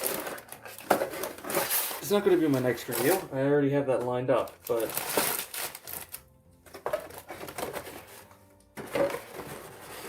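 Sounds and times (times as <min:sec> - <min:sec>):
plastic packaging crinkling: 0:00.0 - 0:03.3, 0:04.4 - 0:08.3.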